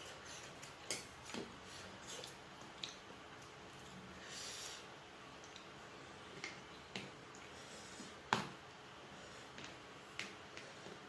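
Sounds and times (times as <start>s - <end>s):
person eating: 0.0s - 8.3s.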